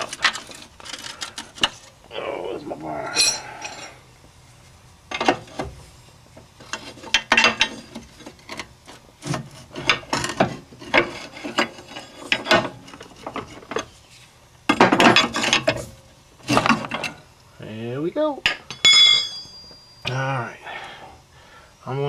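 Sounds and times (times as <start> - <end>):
metal tools clanking: 3.0 - 4.0, 18.4 - 20.2
metal tools scraping: 3.0 - 4.0, 9.6 - 13.9, 18.6 - 20.2.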